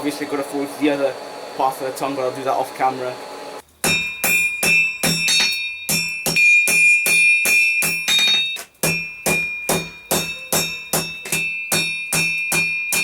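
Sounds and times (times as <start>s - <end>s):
anvil ringing: 3.8s - 13.0s
hammer striking hot steel on anvil: 3.8s - 13.0s.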